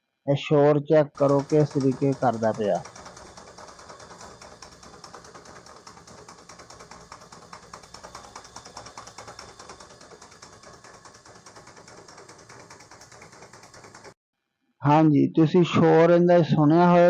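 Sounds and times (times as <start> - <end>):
water pump rattling: 1.1 - 14.2.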